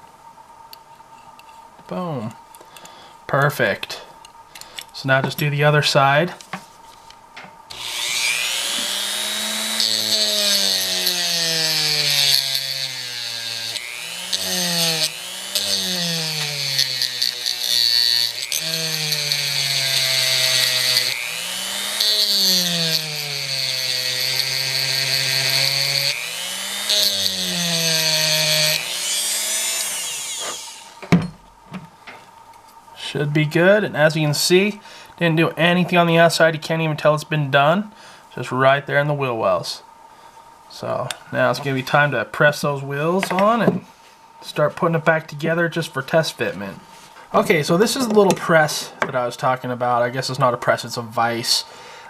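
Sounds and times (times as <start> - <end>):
rotary tool grinding metal: 7.7 - 31.0.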